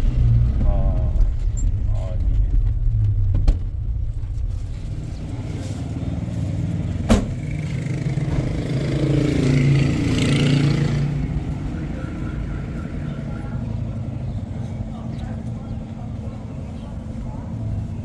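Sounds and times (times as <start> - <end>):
car rumbling on road: 0.0 - 18.0
sharp knock: 7.1 - 7.4.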